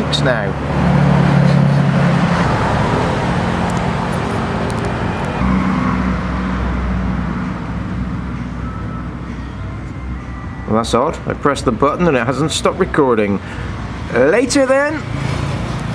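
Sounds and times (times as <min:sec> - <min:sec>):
second vehicle engine running: 0:00.0 - 0:12.2
vehicle engine humming: 0:00.0 - 0:15.9.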